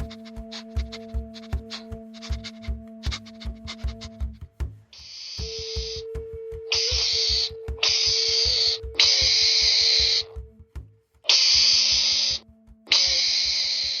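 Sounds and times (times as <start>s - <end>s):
animal hissing: 0.0s - 4.2s, 6.8s - 10.3s, 11.3s - 14.0s
background music with steady beat: 0.0s - 14.0s.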